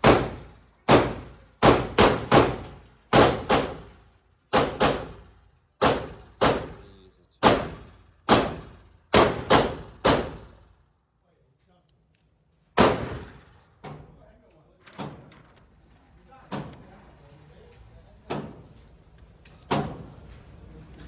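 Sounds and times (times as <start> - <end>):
pistol shots with echo: 0.0 - 3.9, 5.8 - 6.8, 7.4 - 10.5, 12.8 - 13.5.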